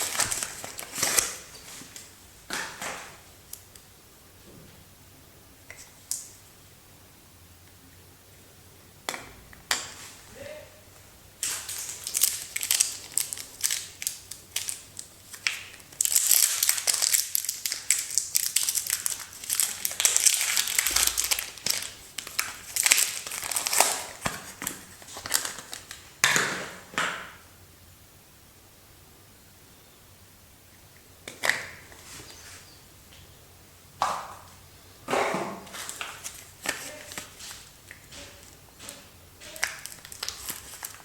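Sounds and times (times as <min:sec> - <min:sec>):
soap wrapper crinkling and tearing: 0:00.0 - 0:02.1, 0:11.4 - 0:26.0, 0:35.7 - 0:38.0, 0:39.6 - 0:41.0.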